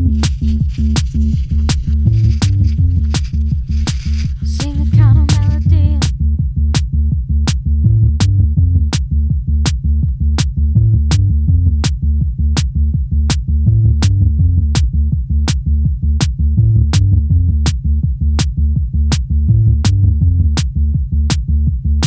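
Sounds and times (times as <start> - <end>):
electronic music: 0.0 - 6.1
sharp clicking beat: 0.0 - 6.2
repeating bass line: 0.0 - 22.0.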